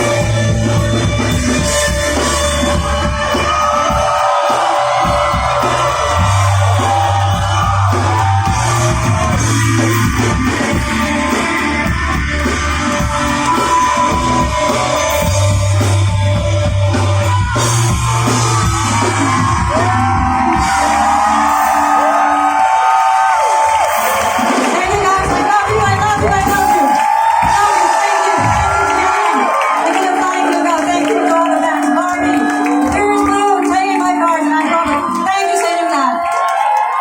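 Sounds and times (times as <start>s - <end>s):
live rock band playing: 0.0s - 37.0s
bass line of low held notes: 5.1s - 21.3s
person singing: 9.5s - 20.9s.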